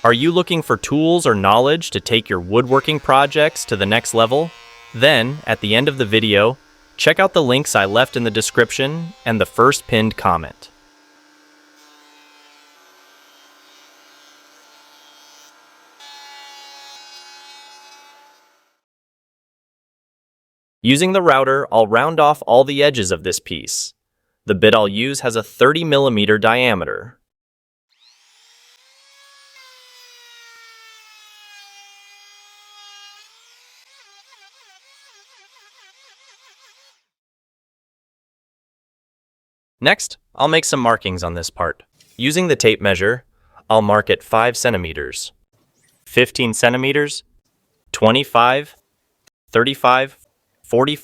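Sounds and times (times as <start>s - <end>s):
planer motor whining: 1.9s - 11.9s.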